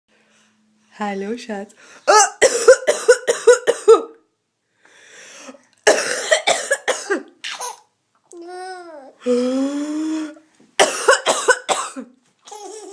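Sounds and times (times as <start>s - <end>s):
woman coughing: 2.1s - 4.2s, 5.9s - 7.8s, 10.8s - 12.1s.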